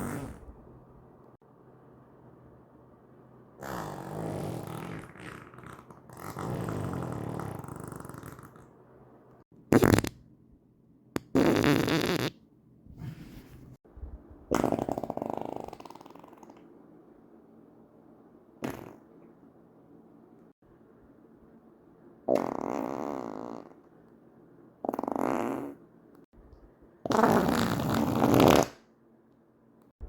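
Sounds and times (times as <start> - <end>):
person farting: 0.0 - 0.5, 3.6 - 8.6, 9.7 - 10.2, 11.2 - 12.4, 14.5 - 16.6, 18.6 - 19.0, 22.3 - 23.7, 24.9 - 25.8, 27.1 - 28.8.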